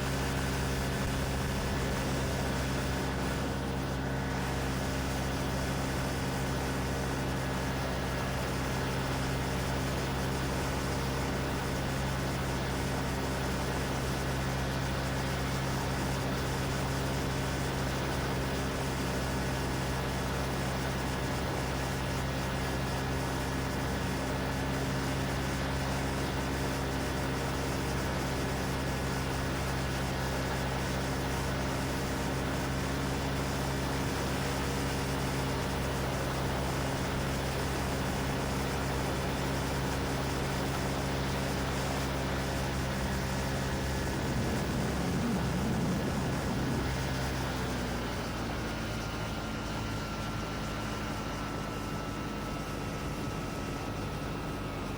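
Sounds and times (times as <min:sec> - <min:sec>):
ultralight engine and propeller: 0:00.0 - 0:54.9
wind hiss: 0:43.0 - 0:48.2.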